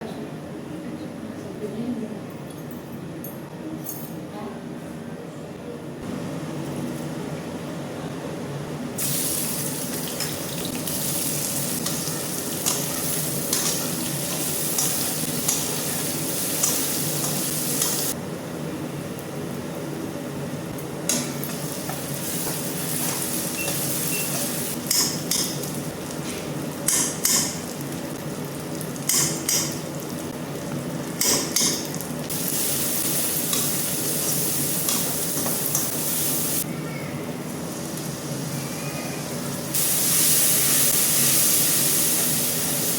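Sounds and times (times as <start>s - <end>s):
curry sizzling in a pan: 9.0s - 18.2s, 39.8s - 42.9s.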